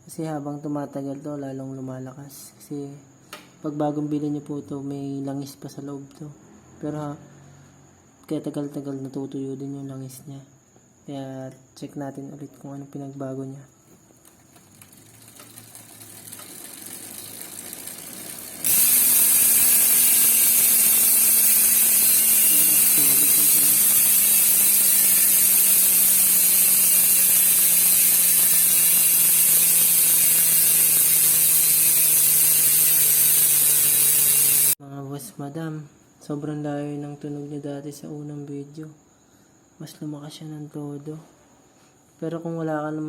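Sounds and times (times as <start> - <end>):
bicycle hub freewheel clicking buzz: 14.1 - 34.8.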